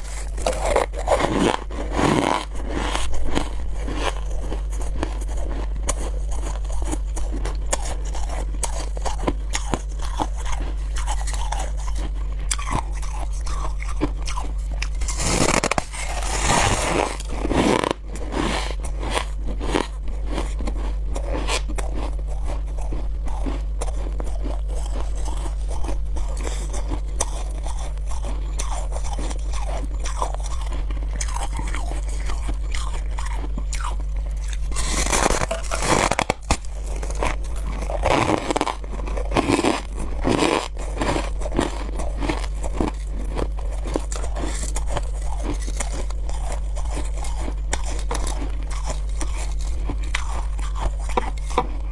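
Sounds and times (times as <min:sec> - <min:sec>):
crunching and chewing ice: 0:00.0 - 0:51.9
low hum: 0:00.0 - 0:51.9.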